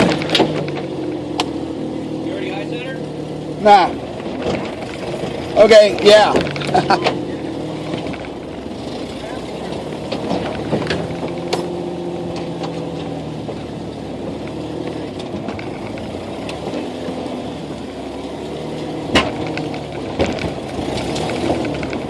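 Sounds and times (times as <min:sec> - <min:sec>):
car engine at low revs: 0:00.0 - 0:22.0
knocks and clicks: 0:06.0 - 0:07.2.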